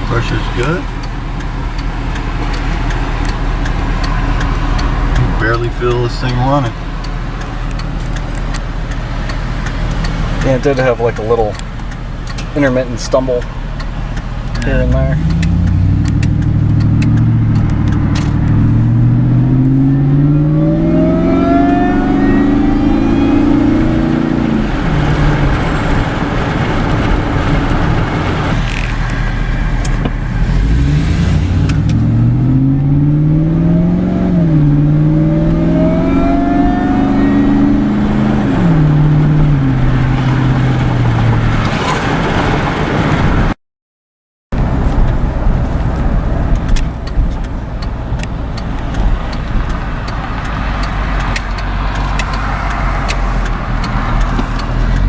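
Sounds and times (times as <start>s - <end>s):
supercharger whine: 0.0s - 43.5s
engine accelerating hard: 0.0s - 43.6s, 44.6s - 55.0s.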